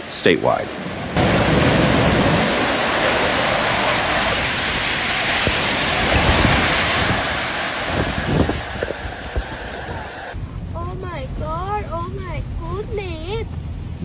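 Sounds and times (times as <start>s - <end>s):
water rushing: 0.0s - 10.4s.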